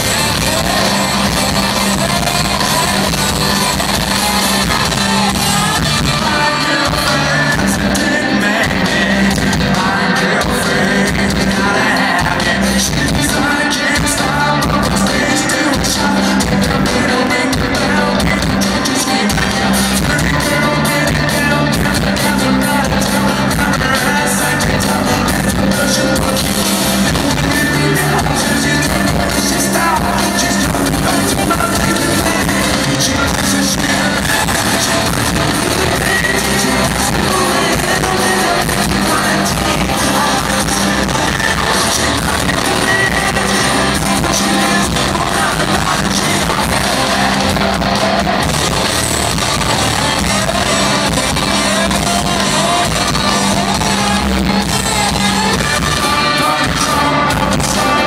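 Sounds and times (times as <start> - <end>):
live rock band playing: 0.0 - 58.0
man singing lead vocals: 0.0 - 58.0.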